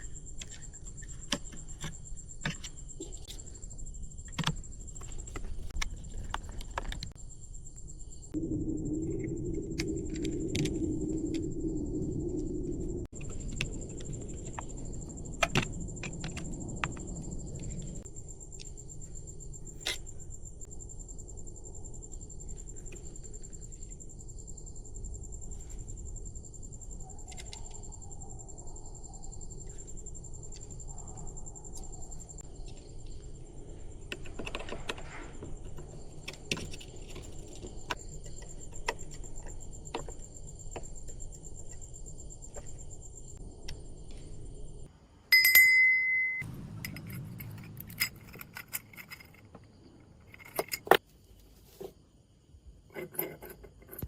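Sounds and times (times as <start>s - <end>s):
small metal parts clinking: 46.7s - 51.0s, 52.9s - 54.0s.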